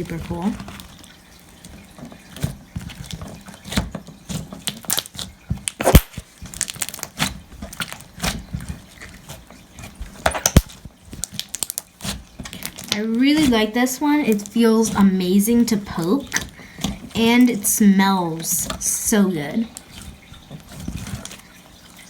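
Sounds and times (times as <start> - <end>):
slime squeezed crackling and popping: 4.6 - 8.4, 10.4 - 13.6
sharp loud pops: 5.8 - 6.2.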